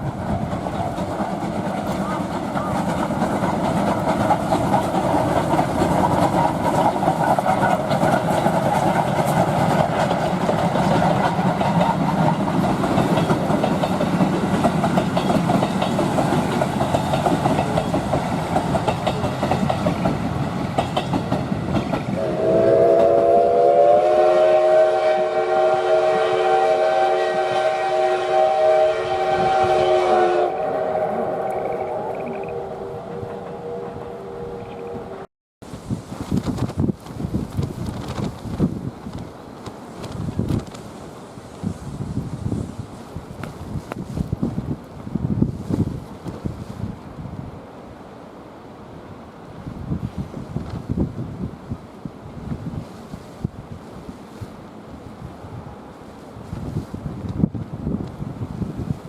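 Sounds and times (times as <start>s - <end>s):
steam train running on track: 0.0s - 59.0s
steam train whistle blast: 22.2s - 35.3s.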